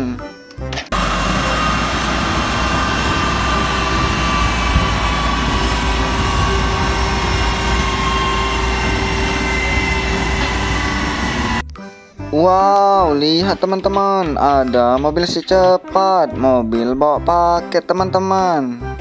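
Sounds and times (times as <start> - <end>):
jet engine roar with whine: 0.9 - 11.6.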